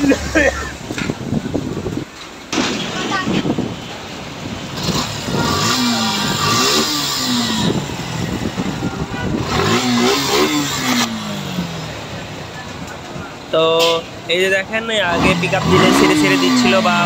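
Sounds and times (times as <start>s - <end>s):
motorcycle engine revving: 4.6s - 12.3s, 15.1s - 17.0s.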